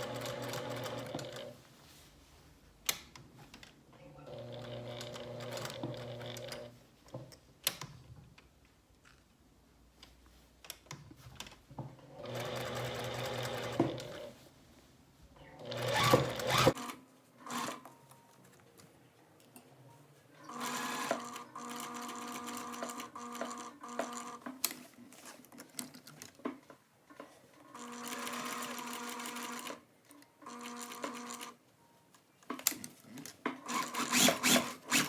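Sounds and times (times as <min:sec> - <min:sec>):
sewing machine stitching: 0:00.0 - 0:01.5, 0:12.2 - 0:14.3, 0:15.6 - 0:16.8, 0:33.7 - 0:35.0.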